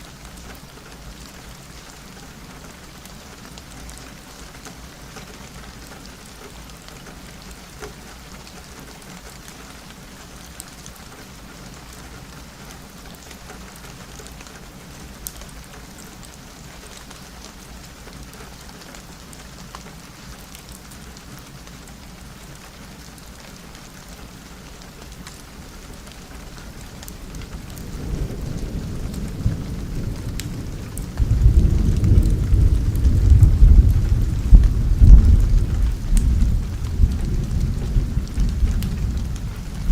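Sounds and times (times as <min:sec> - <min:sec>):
steady rain: 0:00.0 - 0:39.9
low rumble of thunder: 0:25.7 - 0:39.9.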